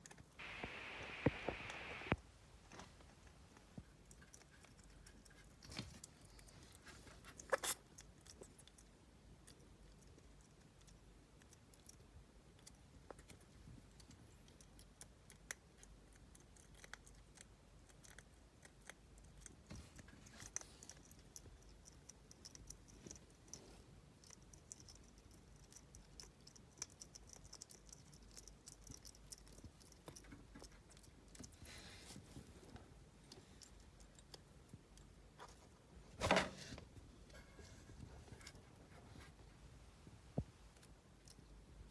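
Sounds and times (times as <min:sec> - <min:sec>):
hedgehog clicks and scratching: 0:03.9 - 0:36.3.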